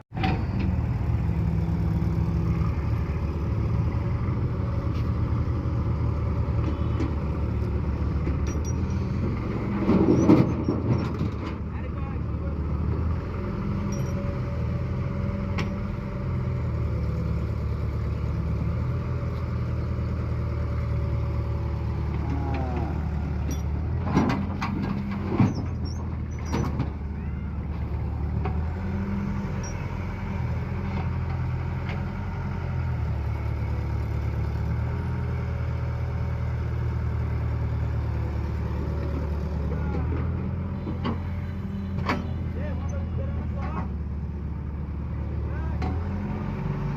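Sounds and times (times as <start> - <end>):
diesel engine droning: 0.0 - 46.9.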